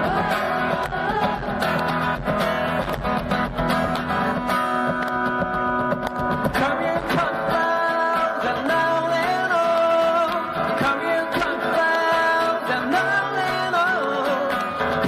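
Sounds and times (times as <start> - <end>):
person singing: 0.0 - 2.2, 6.4 - 15.0
band music with strummed guitar: 0.0 - 15.0.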